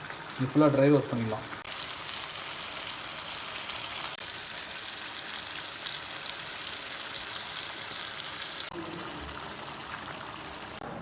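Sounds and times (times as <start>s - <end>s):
chicken sizzling in hot oil: 0.0s - 10.8s.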